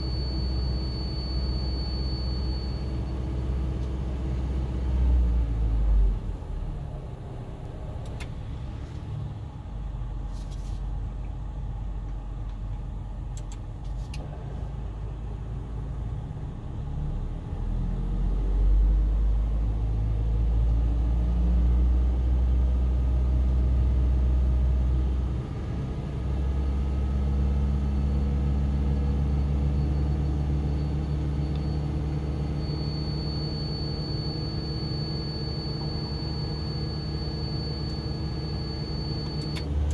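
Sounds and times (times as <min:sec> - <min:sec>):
thin high whine: 0:00.0 - 0:03.3, 0:29.8 - 0:39.7
car engine low hum: 0:00.0 - 0:39.9.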